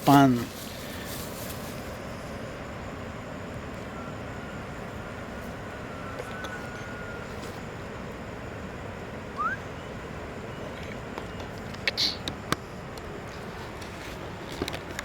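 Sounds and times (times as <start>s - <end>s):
short rising whistle: 9.4s - 9.7s.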